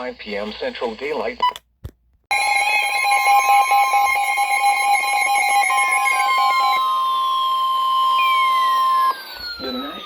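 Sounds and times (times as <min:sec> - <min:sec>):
electronic emergency alert tones: 0:02.3 - 0:10.0
steady high tone: 0:02.3 - 0:10.0
tones gliding downward in pitch: 0:02.3 - 0:10.0
pulsing lower tone: 0:02.4 - 0:10.0.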